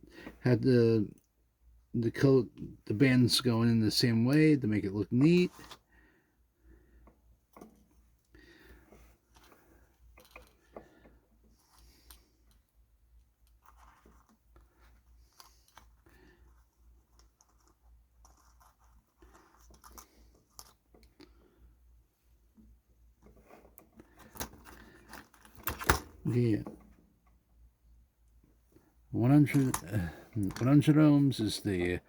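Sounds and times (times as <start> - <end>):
small clicks and scratching: 8.7 - 21.7, 22.5 - 27.4.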